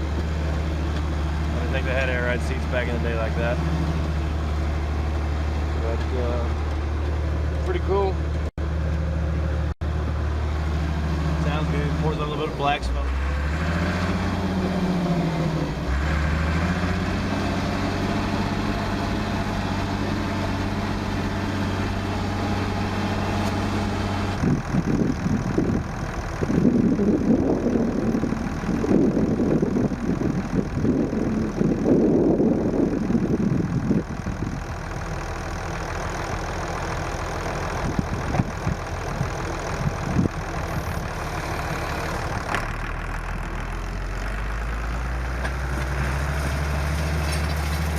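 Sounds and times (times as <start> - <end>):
tractor diesel engine running: 0.0 - 47.9.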